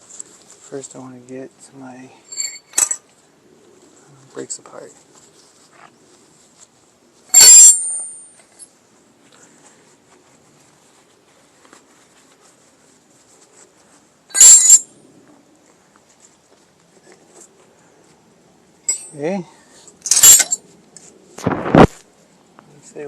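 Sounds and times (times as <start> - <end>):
metal clatter with high ringing: 2.3 - 3.0, 7.3 - 8.7, 14.3 - 14.9, 18.8 - 19.2, 20.0 - 20.6.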